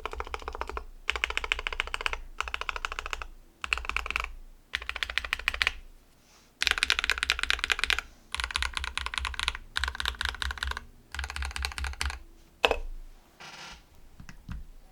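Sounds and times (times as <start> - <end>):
fast typing on mechanical keyboard: 0.0 - 5.8, 6.6 - 12.2.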